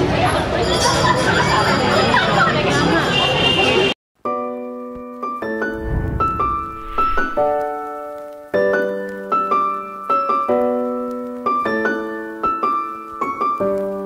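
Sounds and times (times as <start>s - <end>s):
piano music: 4.2s - 14.0s.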